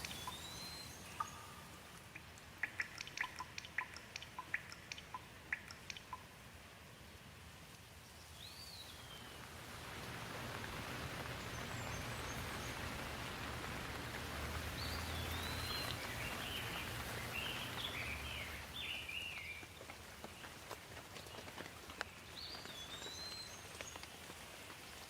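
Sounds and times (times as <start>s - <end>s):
bird chirping: 0.0s - 6.3s, 8.0s - 9.5s, 11.2s - 13.4s, 14.6s - 20.5s, 22.1s - 24.1s
rain falling: 0.0s - 25.0s.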